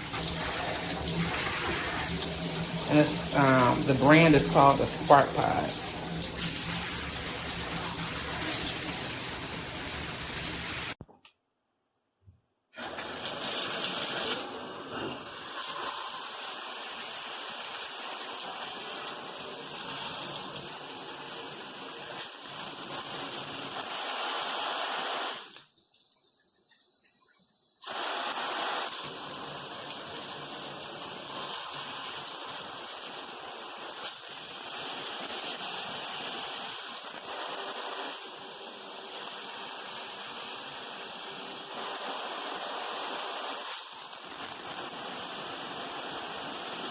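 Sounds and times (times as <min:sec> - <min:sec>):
shower head spraying water: 0:00.0 - 0:11.0.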